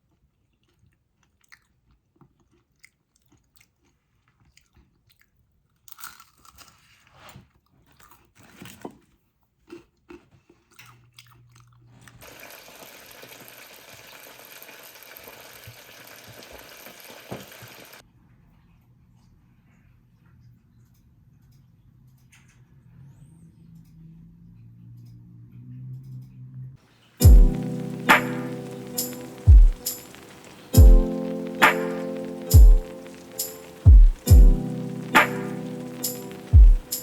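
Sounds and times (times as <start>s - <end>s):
crunching and chewing food: 0.1s - 14.2s
steady hiss: 27.2s - 37.0s.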